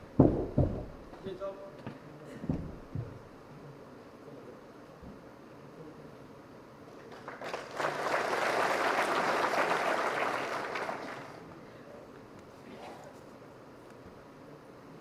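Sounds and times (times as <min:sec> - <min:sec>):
audience applauding: 0:07.0 - 0:11.5.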